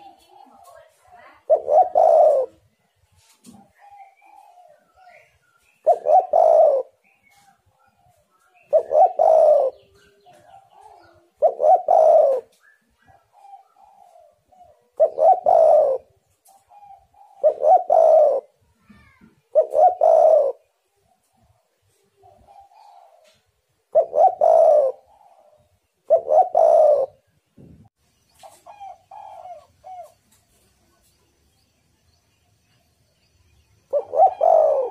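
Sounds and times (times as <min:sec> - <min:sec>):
dove cooing: 0:00.0 - 0:02.7, 0:03.4 - 0:27.3, 0:28.4 - 0:30.5, 0:33.8 - 0:34.9
faint high bird calls: 0:28.2 - 0:32.8.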